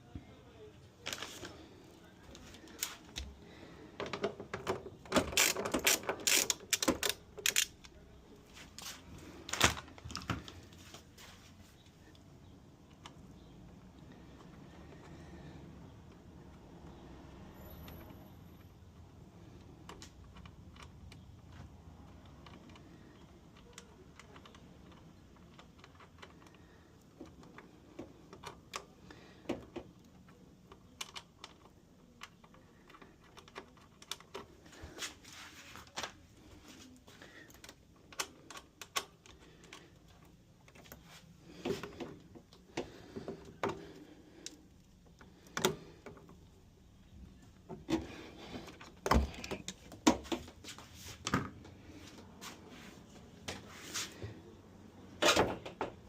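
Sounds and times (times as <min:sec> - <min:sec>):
hand tools clicking and knocking: 0:04.0 - 0:07.8.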